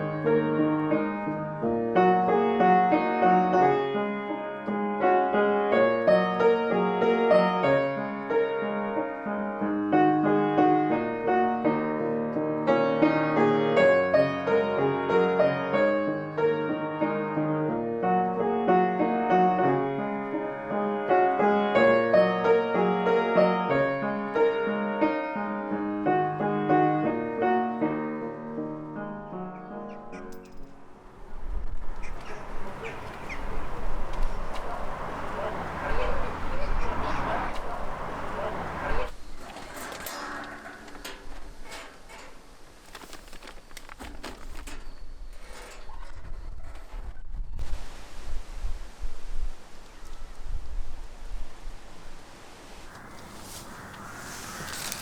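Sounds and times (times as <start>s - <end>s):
solo piano music: 0.0s - 39.1s.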